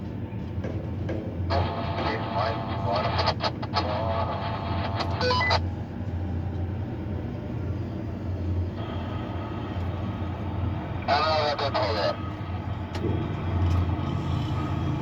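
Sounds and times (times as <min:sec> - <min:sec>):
steady low hum: 0:01.4 - 0:15.0
distorted radio voice: 0:01.5 - 0:05.6, 0:11.0 - 0:12.2
short radio beep: 0:01.6 - 0:05.6.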